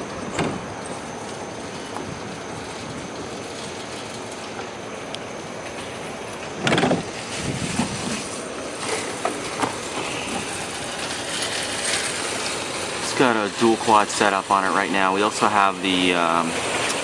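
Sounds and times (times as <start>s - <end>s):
background hiss: 0.0s - 17.0s
loud clunk: 0.3s - 0.7s, 6.6s - 7.1s.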